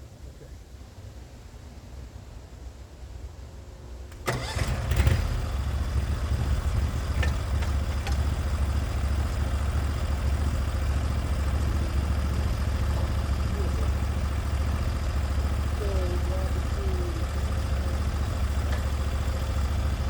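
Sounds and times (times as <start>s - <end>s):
sawmill engine running: 4.1s - 20.0s.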